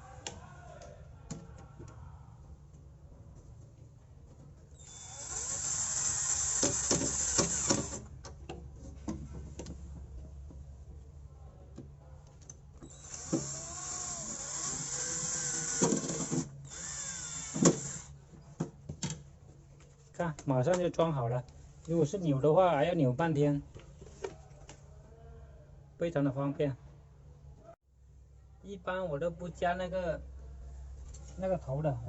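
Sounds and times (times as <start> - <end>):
electric drill driving screws: 4.8 - 8.1, 12.8 - 18.1.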